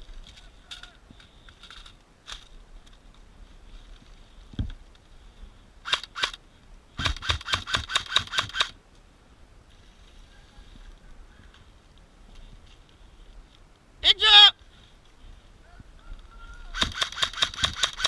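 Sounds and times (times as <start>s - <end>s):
airsoft gun shots: 7.0s - 8.7s, 16.8s - 18.0s.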